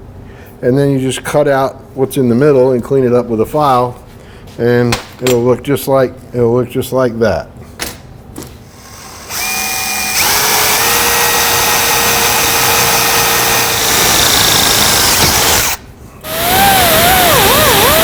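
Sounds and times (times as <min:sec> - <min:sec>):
electric drill boring metal: 0:08.8 - 0:18.0.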